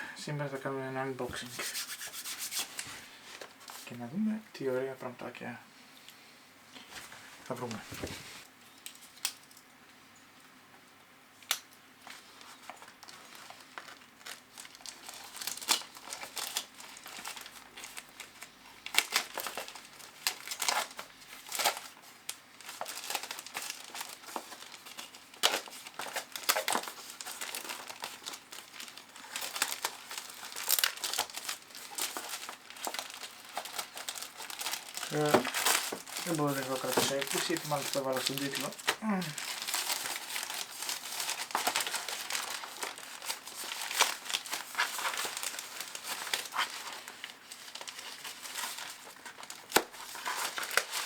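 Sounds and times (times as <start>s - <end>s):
packaging crinkling and tearing: 11.4s - 51.0s.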